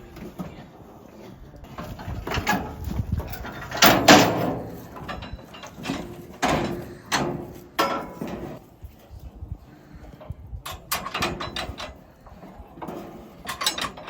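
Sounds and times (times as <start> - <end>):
metal livestock gates clanging: 1.7 - 8.6, 10.6 - 14.0.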